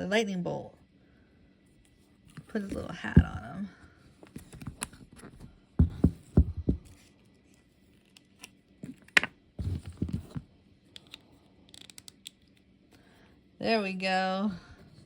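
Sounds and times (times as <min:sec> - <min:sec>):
dull thumps of plastic figure: 0:05.8 - 0:06.9.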